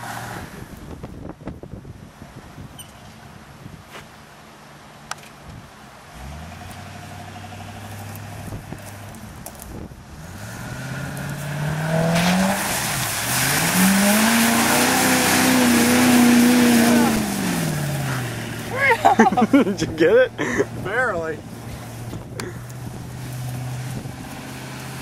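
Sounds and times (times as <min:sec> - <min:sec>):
truck engine revving: 0:06.1 - 0:25.0
tyres spinning in mud: 0:10.4 - 0:25.0.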